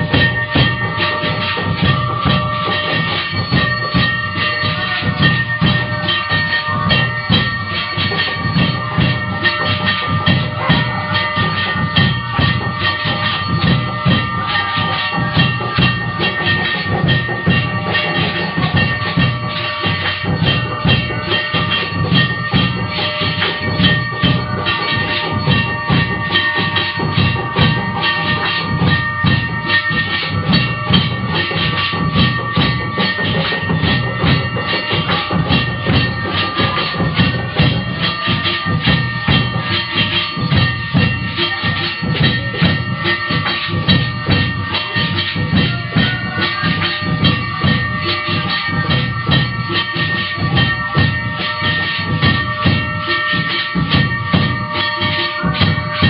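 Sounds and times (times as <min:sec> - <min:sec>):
fast rhythmic percussion: 0:00.0 - 0:56.0
high ringing tones: 0:00.0 - 0:56.0.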